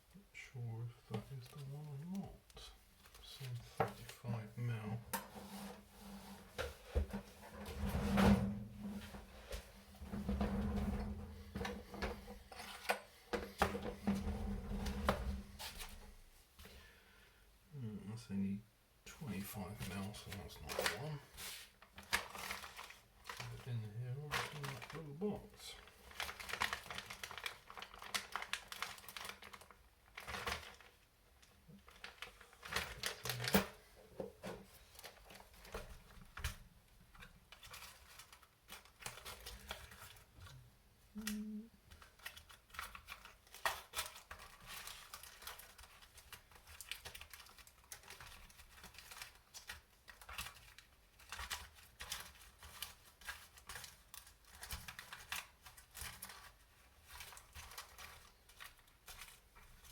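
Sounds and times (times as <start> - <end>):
plastic bags crinkling: 20.2 - 33.8, 37.1 - 40.6, 41.2 - 59.9.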